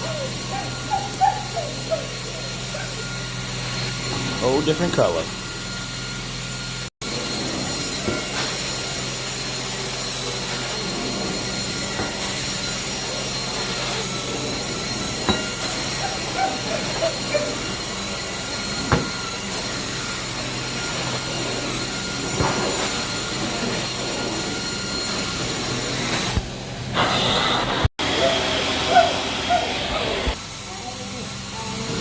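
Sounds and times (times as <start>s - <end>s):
carpet cleaning machine running: 0.0s - 32.0s.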